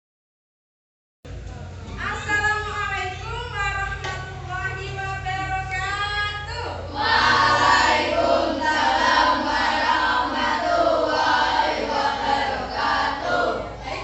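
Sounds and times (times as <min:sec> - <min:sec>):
children chanting in unison: 0:06.9 - 0:14.0.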